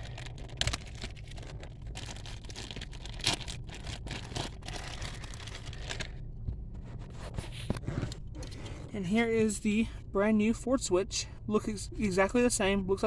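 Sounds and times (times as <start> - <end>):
plastic bag crinkling: 0.0 - 6.2
steady low hum: 0.0 - 13.0.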